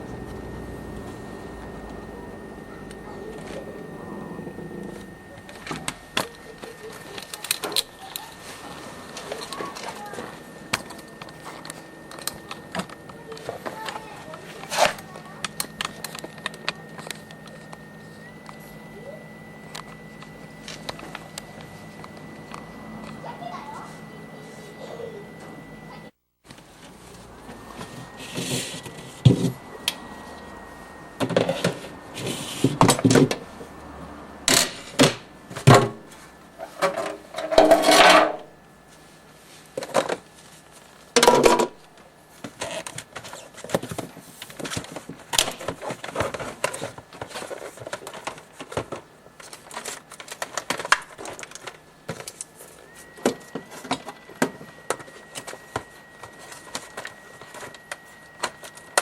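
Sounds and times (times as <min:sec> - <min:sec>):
low hum: 0:00.0 - 0:26.1
faint steady high tone: 0:00.0 - 0:26.2, 0:26.9 - 0:38.9, 0:51.2 - 0:59.0
plastic and metal parts clattering: 0:36.6 - 0:38.5, 0:42.4 - 0:59.0.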